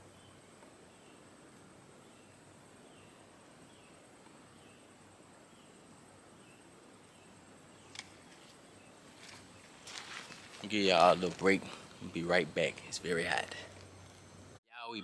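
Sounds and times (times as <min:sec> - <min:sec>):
faint steady high hiss: 0:00.0 - 0:14.6
small click: 0:07.9 - 0:08.1.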